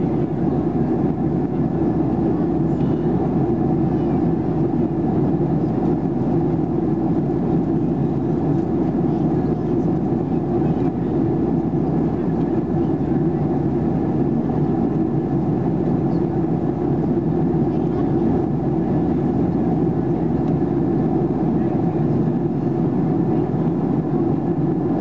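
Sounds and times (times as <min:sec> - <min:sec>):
airplane cabin engine roar: 0:00.0 - 0:25.0.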